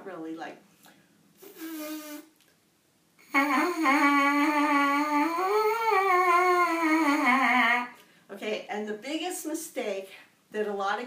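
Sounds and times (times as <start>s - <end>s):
lips buzzing: 1.4s - 2.6s, 3.2s - 8.0s.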